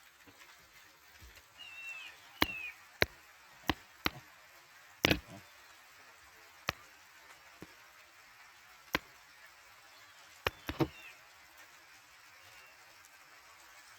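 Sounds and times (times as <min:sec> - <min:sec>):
sharp clicking taps: 0:02.4 - 0:04.2, 0:05.0 - 0:05.4, 0:10.4 - 0:11.1.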